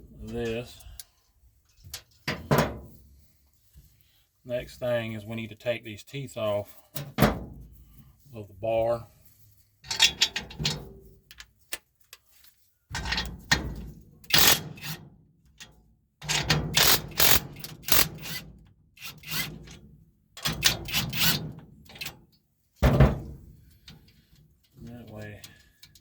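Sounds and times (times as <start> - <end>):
hand tools scraping metal: 19.0 - 19.6.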